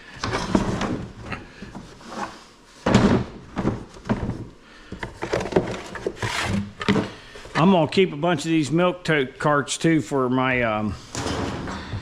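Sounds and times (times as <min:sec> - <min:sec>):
plastic crates knocking and scraping: 0:00.2 - 0:02.2, 0:02.8 - 0:07.3.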